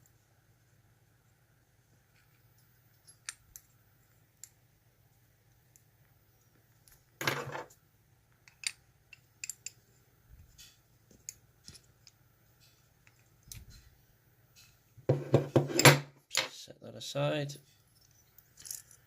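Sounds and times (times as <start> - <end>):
metal lock parts clicking: 8.4 - 9.8.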